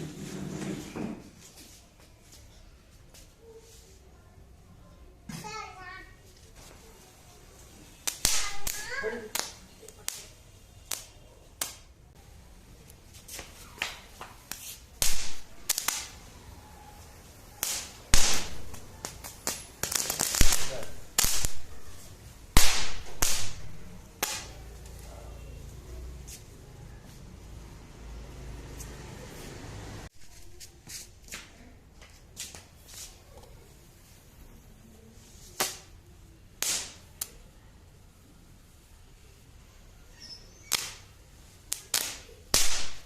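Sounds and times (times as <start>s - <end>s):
firecrackers popping: 7.6s - 16.5s, 17.2s - 25.5s, 35.2s - 37.5s, 40.5s - 43.0s.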